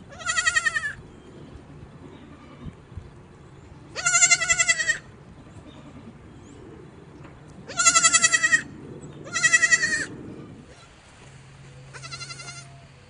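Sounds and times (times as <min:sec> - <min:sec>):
goat bleating: 0:00.0 - 0:01.0, 0:03.9 - 0:06.2, 0:07.7 - 0:11.0, 0:11.9 - 0:12.8.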